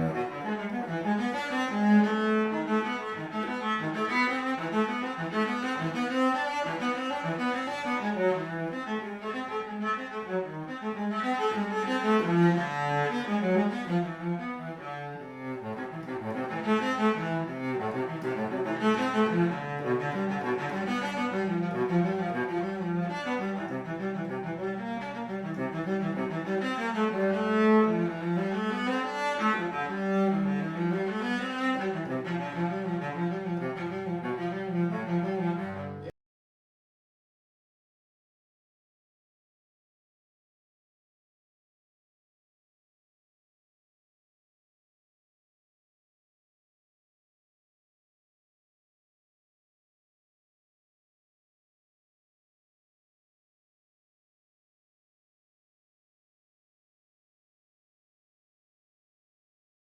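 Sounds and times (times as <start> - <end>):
bowed cello: 0.0 - 36.2.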